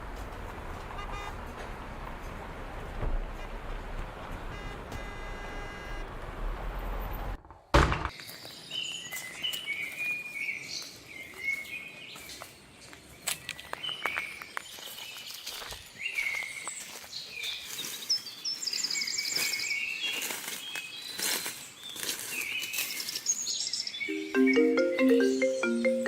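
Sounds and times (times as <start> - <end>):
city traffic noise: 0.0 - 7.4, 24.1 - 26.0
car horn: 1.0 - 1.4, 4.4 - 6.1
loud thump: 7.7 - 8.1
birds chirping: 8.1 - 26.0.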